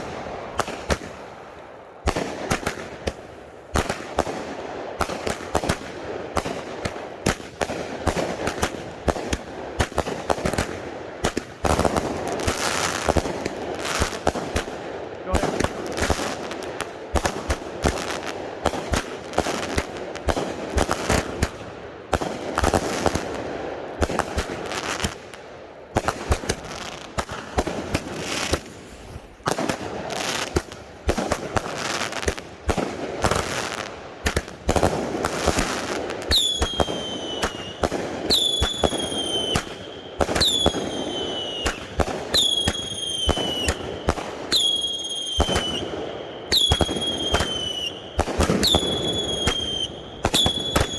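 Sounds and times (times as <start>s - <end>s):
firework bangs and crackling: 0.0s - 50.9s
shrill firework whistles: 36.3s - 50.9s.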